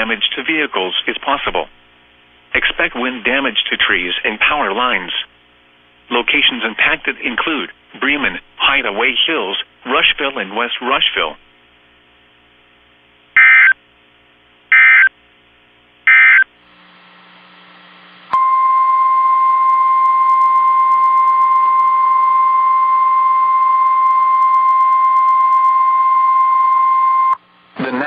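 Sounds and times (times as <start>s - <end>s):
steady single-pitch alarm tone: 13.4s - 13.8s, 14.7s - 15.1s, 16.1s - 16.5s.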